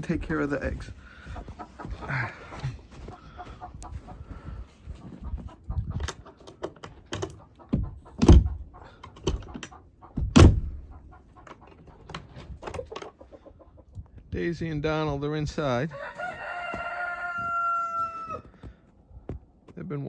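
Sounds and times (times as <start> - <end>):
hens clucking: 0.0 - 14.3, 15.6 - 19.0
irregular clicks and knocks: 5.9 - 10.8
heavy thumps: 10.2 - 10.9.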